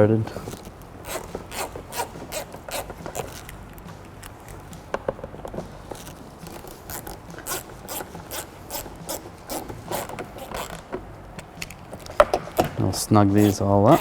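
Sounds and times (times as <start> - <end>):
hand ratchet clicking: 0.5 - 4.7, 5.9 - 14.0.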